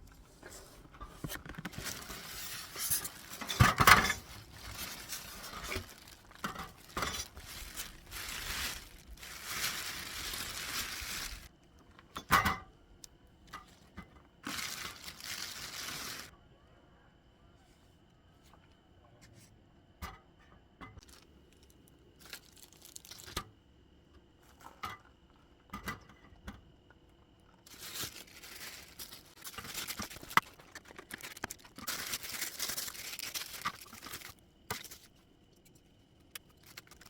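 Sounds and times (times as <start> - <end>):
crinkling and rustling: 0.0 - 12.5, 13.4 - 16.3, 21.0 - 23.5, 27.2 - 37.0.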